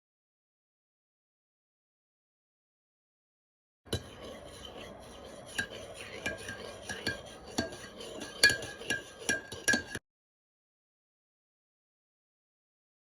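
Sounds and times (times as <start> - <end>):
utensil clinking against dish: 3.9 - 10.0.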